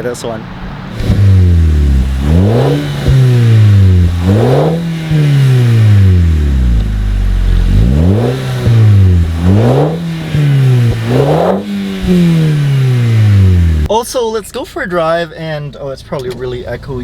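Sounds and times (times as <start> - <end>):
car engine revving: 0.4 - 13.9.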